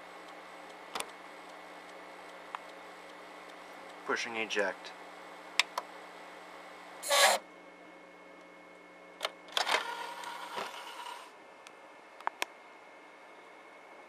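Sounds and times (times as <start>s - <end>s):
motor whirring with a whine: 7.0s - 7.4s, 9.6s - 11.4s.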